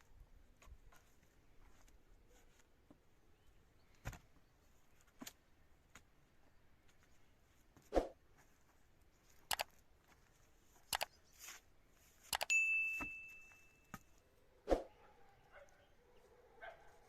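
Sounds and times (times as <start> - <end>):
metal object ringing ding: 12.5 - 14.0.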